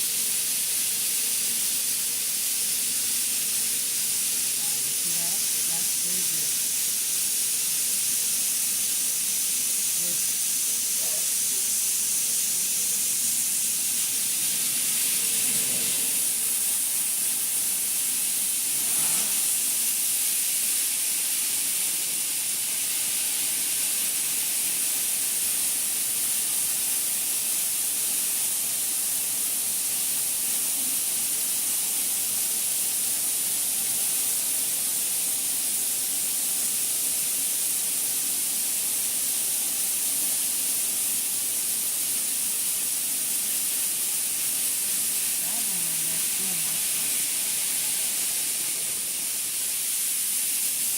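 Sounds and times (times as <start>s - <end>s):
cleaning machine hissing: 0.0s - 50.9s.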